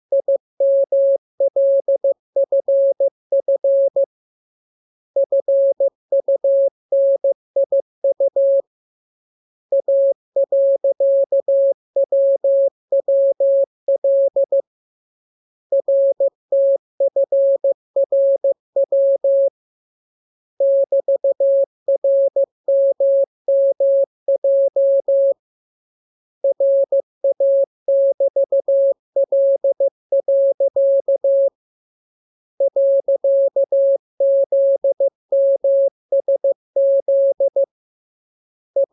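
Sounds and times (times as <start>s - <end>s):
morse code tone: 0.1s - 4.1s, 32.6s - 37.7s.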